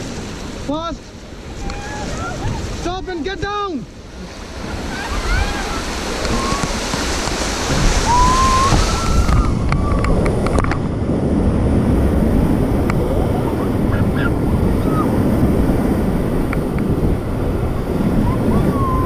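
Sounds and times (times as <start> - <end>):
whitewater rushing and splashing: 0.0 - 19.0
wind buffeting microphone: 1.2 - 19.0
high gliding yells: 8.0 - 10.2, 18.2 - 19.0.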